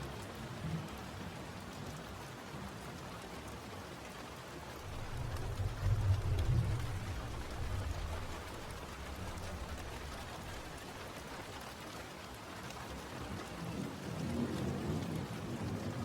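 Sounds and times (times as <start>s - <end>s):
steady rain falling: 0.0s - 16.0s
thunder rumble: 4.8s - 11.5s.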